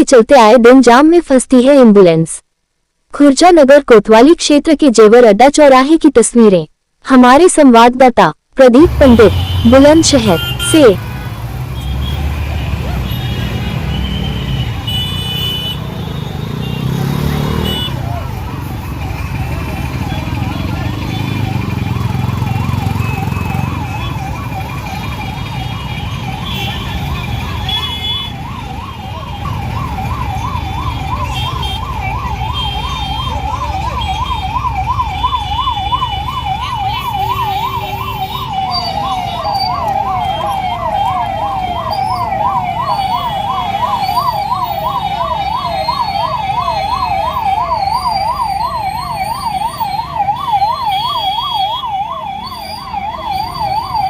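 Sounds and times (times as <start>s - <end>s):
ambulance sirens yelping: 8.8s - 54.0s
road traffic rumble: 8.8s - 54.0s
short horn beeps: 9.1s - 17.0s.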